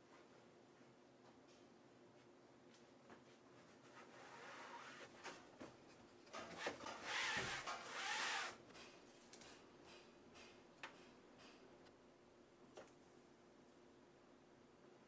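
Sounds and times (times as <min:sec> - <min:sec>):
material rubbing and scraping: 0:03.8 - 0:05.3, 0:06.5 - 0:08.6.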